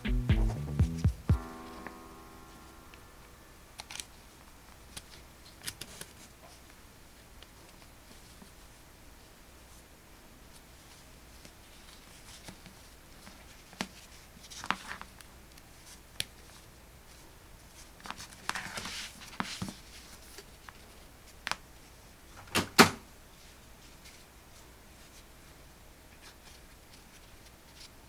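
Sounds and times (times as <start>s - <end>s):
double knock: 0.0s - 1.5s.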